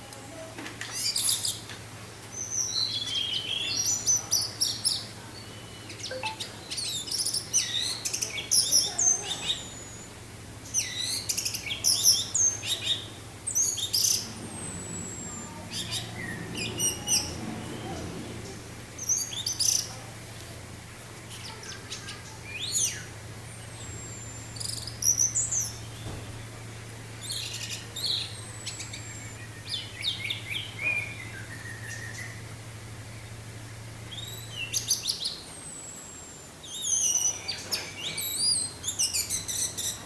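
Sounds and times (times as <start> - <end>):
thin high gliding whistles: 5.6 - 8.0, 10.8 - 19.9
thrush singing: 11.2 - 34.5.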